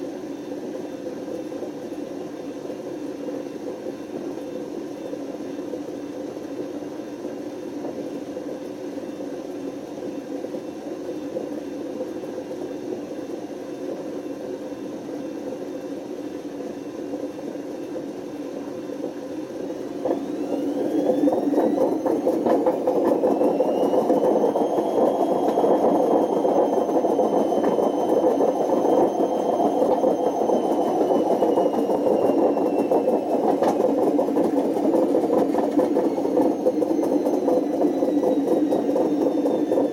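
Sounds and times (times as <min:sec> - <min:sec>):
washing machine rough noise: 0:00.0 - 0:39.9
motor whine: 0:19.8 - 0:39.9.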